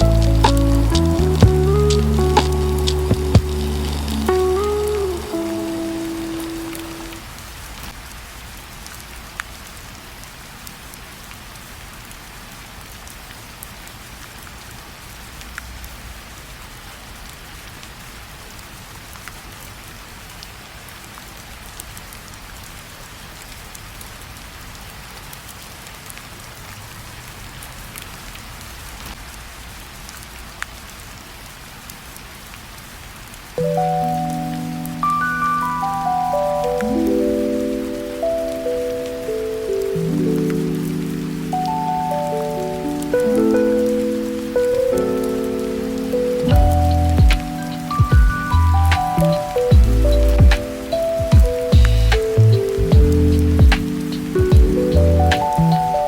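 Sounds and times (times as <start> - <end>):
music: 0.0 - 7.2, 33.6 - 56.0
rain falling: 0.0 - 56.0.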